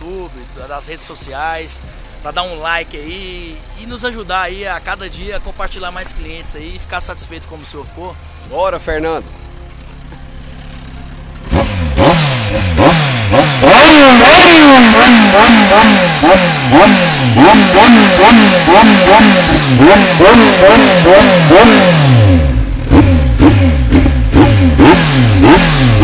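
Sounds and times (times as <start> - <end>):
motorcycle engine revving: 8.2 - 26.0.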